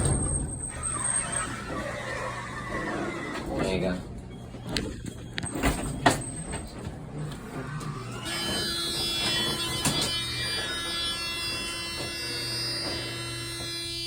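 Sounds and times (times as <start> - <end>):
elevator knocks and clunks: 0.0 - 1.0
elevator doors sliding: 0.0 - 13.8
elevator steady hum: 0.0 - 14.0.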